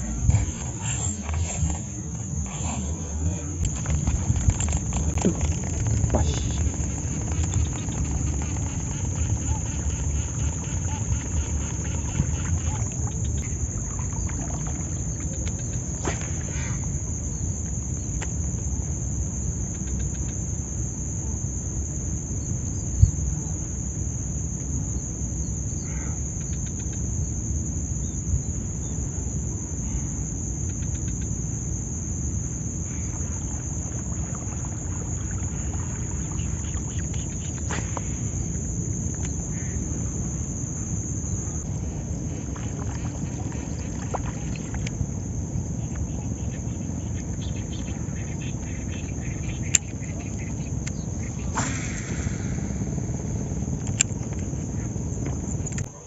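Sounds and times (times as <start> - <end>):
high insect drone: 0.0 - 56.0
faint clicks: 19.7 - 20.4.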